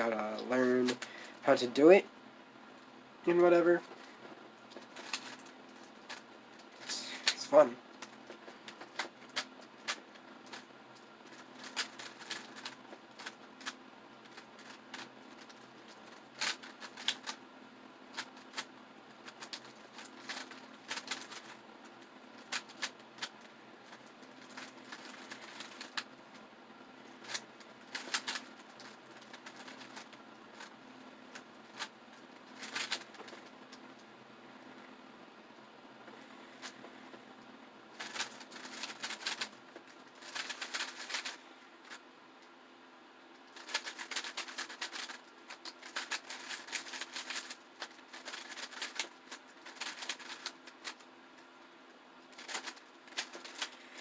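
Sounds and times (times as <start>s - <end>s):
puzzle cube plastic clicks: 4.7s - 17.4s, 18.1s - 26.1s, 27.1s - 30.7s, 31.3s - 33.5s, 38.0s - 39.6s, 40.2s - 41.4s, 43.5s - 51.0s, 52.4s - 54.0s.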